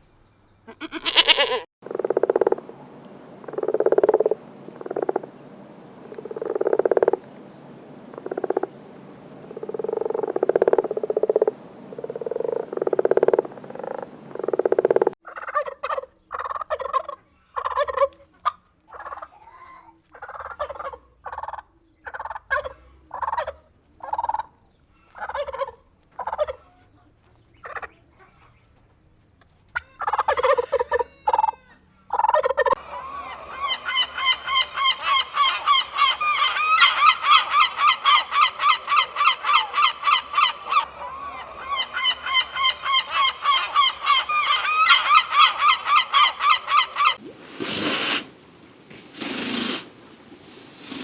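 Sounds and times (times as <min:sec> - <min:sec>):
domestic fowl calling: 0:00.0 - 0:01.7, 0:29.8 - 0:48.2.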